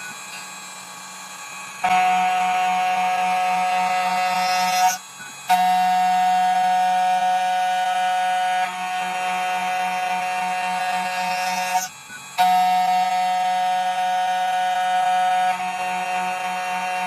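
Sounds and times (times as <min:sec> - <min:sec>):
key cutting machine whining: 0:00.0 - 0:17.0.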